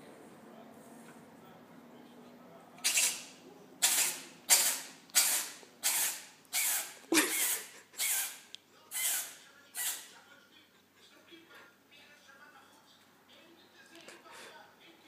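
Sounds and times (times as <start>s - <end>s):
cat sneezing: 3.8s - 10.0s.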